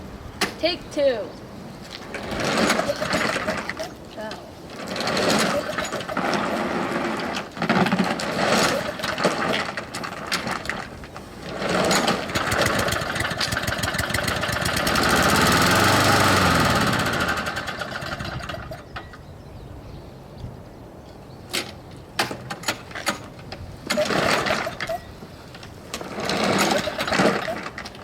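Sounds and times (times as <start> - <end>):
lawn mower engine running: 2.0 - 19.2, 23.8 - 28.0.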